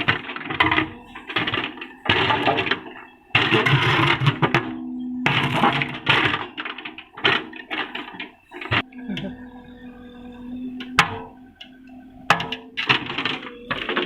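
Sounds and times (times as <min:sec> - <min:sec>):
bucket scraping and rattling: 0:00.0 - 0:08.8, 0:12.3 - 0:14.0.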